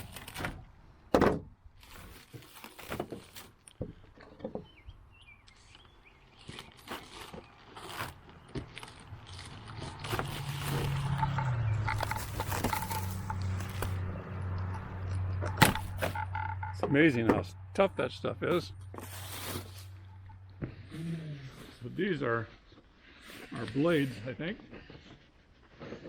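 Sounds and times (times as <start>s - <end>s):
packaging being handled and cut: 1.8s - 3.8s, 6.4s - 14.6s, 15.5s - 16.2s, 19.0s - 20.1s.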